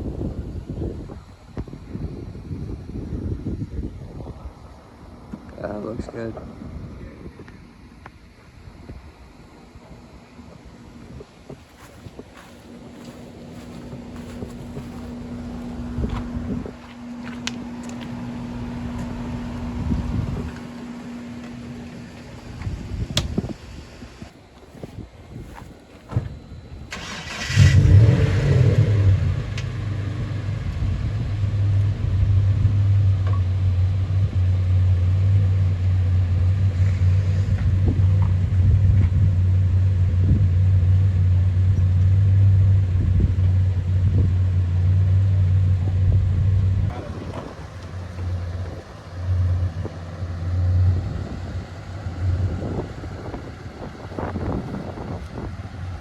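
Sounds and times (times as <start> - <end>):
car engine starting and running: 11.7 - 24.3, 25.4 - 56.0.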